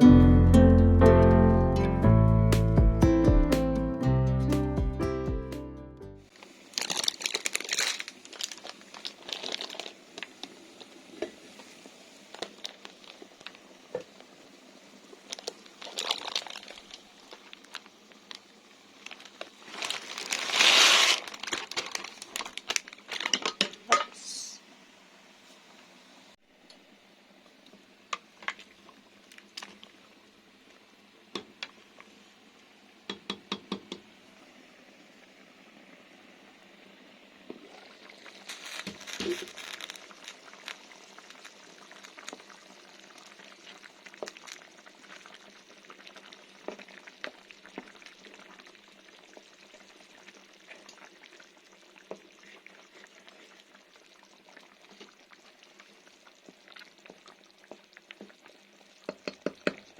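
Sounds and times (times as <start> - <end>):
guitar music: 0.0 - 6.3
crinkling and rustling: 6.3 - 14.2, 15.1 - 23.8, 38.2 - 42.6
faint steady hiss: 6.3 - 59.9.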